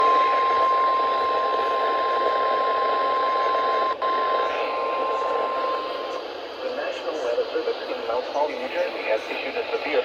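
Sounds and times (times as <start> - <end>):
steady high alarm tone: 0.0 - 6.0
radio static hiss: 4.3 - 10.0.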